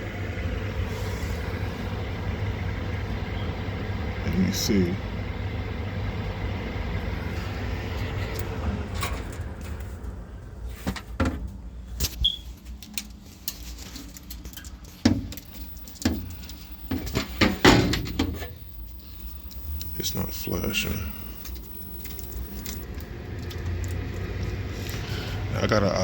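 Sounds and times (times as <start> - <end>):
blower fan humming: 0.0 - 26.0
clicks and metallic rattles: 10.9 - 25.0.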